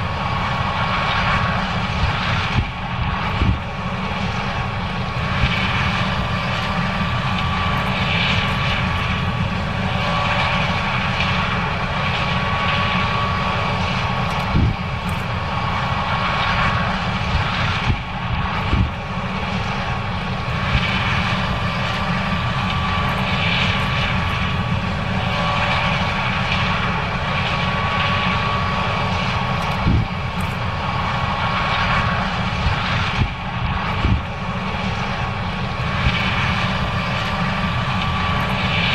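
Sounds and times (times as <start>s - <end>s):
combine harvester machinery drone: 0.0s - 38.9s
steady machine whine: 0.0s - 38.9s.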